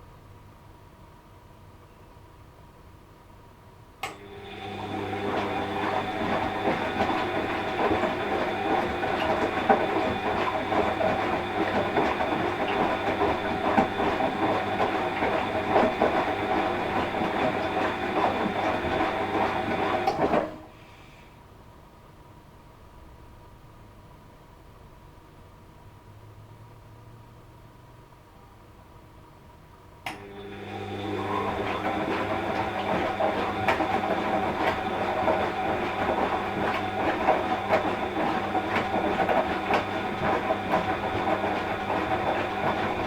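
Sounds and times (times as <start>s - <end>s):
washing machine motor click: 4.0s - 4.6s, 30.1s - 43.0s
washing machine motor whine: 4.0s - 20.8s, 30.1s - 43.0s.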